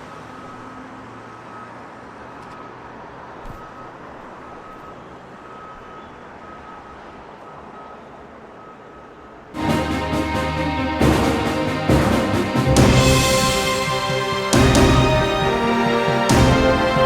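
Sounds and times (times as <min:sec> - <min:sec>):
street traffic: 0:00.0 - 0:17.0
faint high beep: 0:03.5 - 0:09.1.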